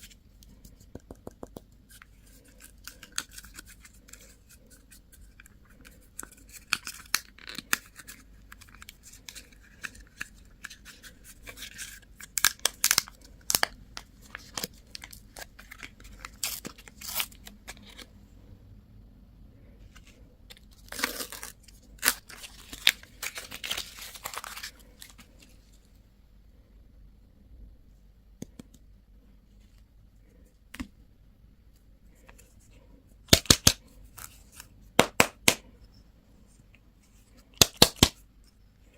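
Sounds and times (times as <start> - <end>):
wrappers crackling and crinkling: 20.7 - 25.5
packaging tearing: 20.8 - 25.2.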